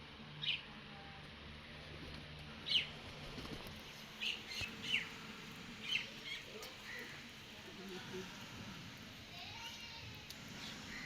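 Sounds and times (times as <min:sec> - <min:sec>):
small birds chirping: 0:00.3 - 0:00.7, 0:02.6 - 0:08.5, 0:10.3 - 0:11.0.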